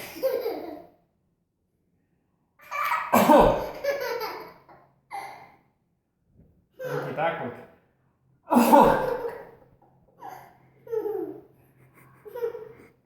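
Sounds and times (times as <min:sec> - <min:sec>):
toddler laughing: 0:00.0 - 0:01.0, 0:02.6 - 0:05.7, 0:08.8 - 0:13.0
man sneezing: 0:08.5 - 0:09.1.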